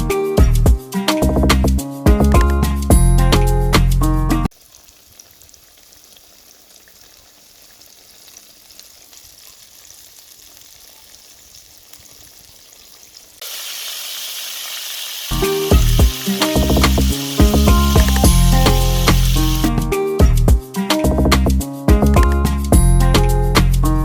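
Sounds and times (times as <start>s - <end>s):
food sizzling in a pan: 4.5s - 19.8s
loud high hiss: 13.4s - 19.7s.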